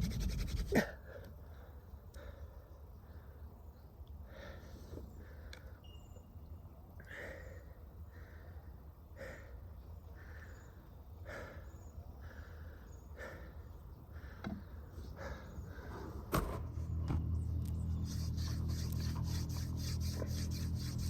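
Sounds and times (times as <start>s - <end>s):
wood rubbing on wood: 0.0s - 0.8s, 17.7s - 21.0s
person breathing hard: 4.2s - 5.8s, 7.0s - 16.2s.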